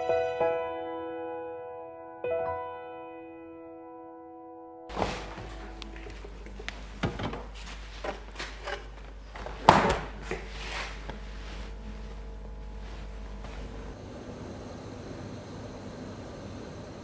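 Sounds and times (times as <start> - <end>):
steady low hum: 4.9 - 17.0.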